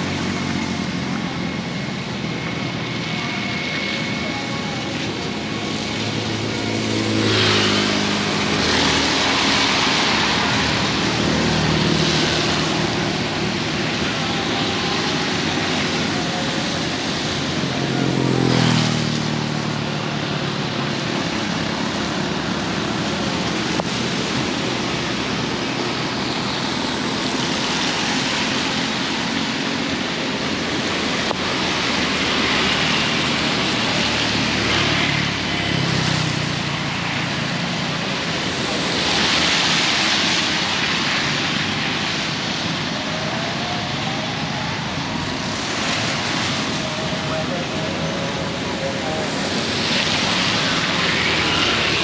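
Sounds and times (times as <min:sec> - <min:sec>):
heavy rain falling: 0:00.0 - 0:52.0
vehicles passing by: 0:00.0 - 0:52.0.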